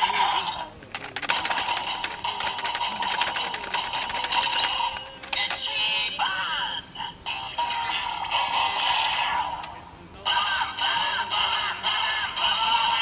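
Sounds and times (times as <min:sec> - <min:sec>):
rapid plastic clicking: 0:00.8 - 0:05.7.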